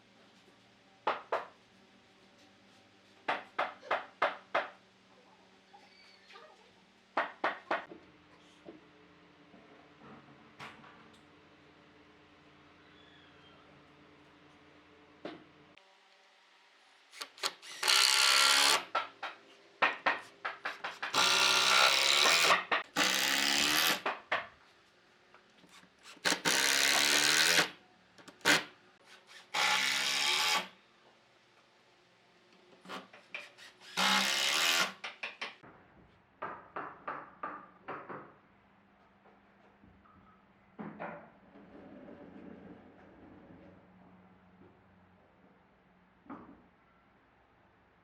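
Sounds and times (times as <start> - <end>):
power drill running: 17.2 - 18.8, 21.1 - 24.0, 26.2 - 27.7, 29.5 - 30.7, 33.8 - 34.9.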